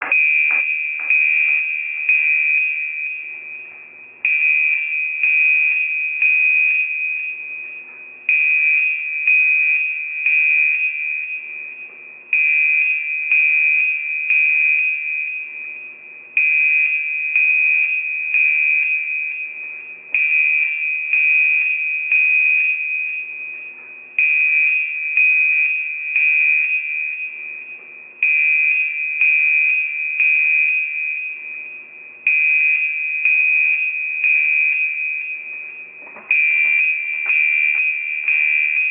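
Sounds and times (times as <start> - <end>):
fire alarm pulsing electronic tone: 0.0 - 38.9.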